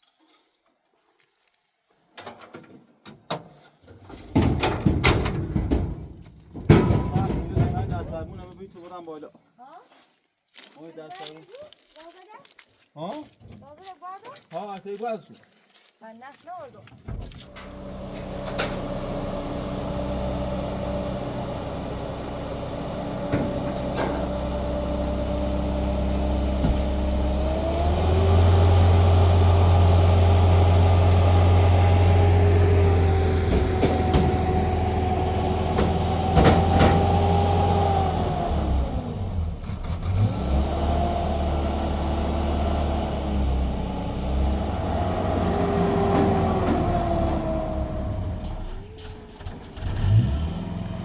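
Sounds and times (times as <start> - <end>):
car engine revving: 17.5 - 51.0.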